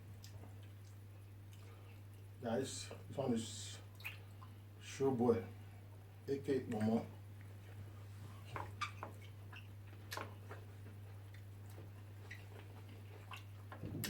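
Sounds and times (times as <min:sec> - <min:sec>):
low electrical hum: 0:00.0 - 0:14.0
small clicks and smacks: 0:00.2 - 0:02.3, 0:08.6 - 0:14.0.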